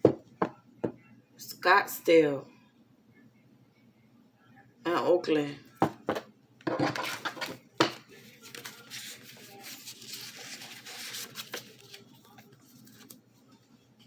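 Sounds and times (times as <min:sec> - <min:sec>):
cards riffling: 0:07.0 - 0:13.2.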